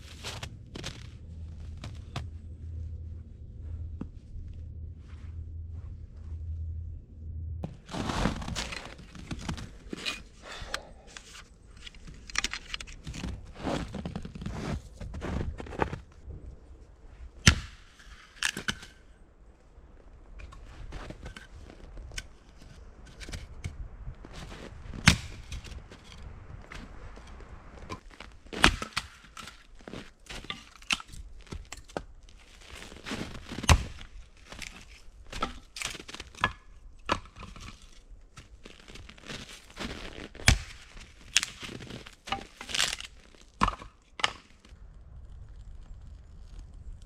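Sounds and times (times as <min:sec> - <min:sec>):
wood crunching and snapping: 0:07.6 - 0:16.1, 0:17.4 - 0:19.0, 0:20.4 - 0:47.0.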